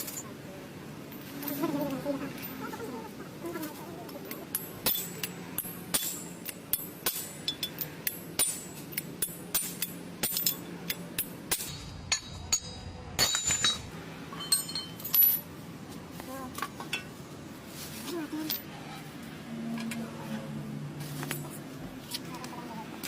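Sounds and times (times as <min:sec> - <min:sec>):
metallic clinks of tools: 0:04.2 - 0:15.5.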